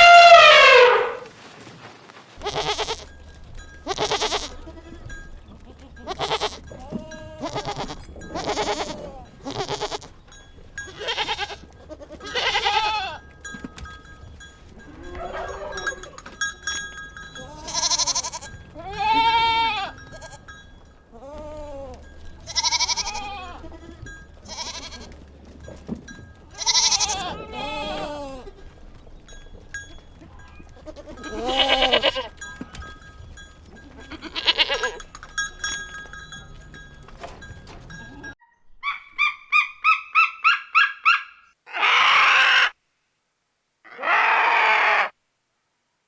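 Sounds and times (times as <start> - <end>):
goats or sheep bleating: 0.0 - 1.2, 2.4 - 3.2, 3.8 - 10.2, 10.8 - 13.3, 14.8 - 16.4, 17.4 - 20.5, 21.1 - 25.2, 26.5 - 28.6, 30.2 - 32.8, 33.7 - 35.1, 41.7 - 42.8, 43.9 - 45.2.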